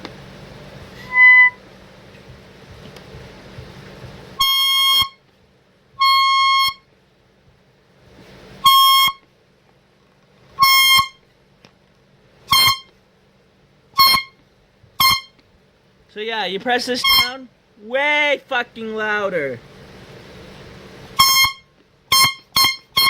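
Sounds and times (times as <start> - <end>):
air horn blasts: 1.0 - 1.6, 4.4 - 5.2, 6.0 - 6.9, 8.6 - 9.3, 10.6 - 11.3, 12.5 - 13.0, 14.0 - 14.4, 15.0 - 15.4, 17.0 - 17.5, 21.2 - 23.0.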